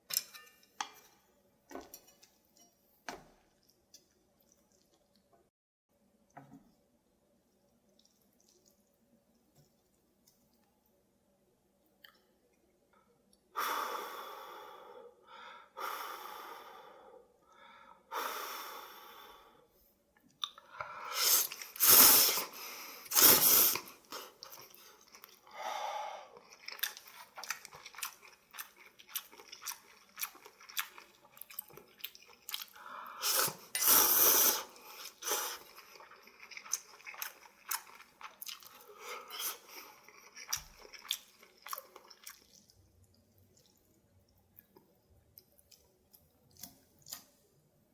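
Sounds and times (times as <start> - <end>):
slurping noodles: 21.0 - 24.8, 32.2 - 38.0.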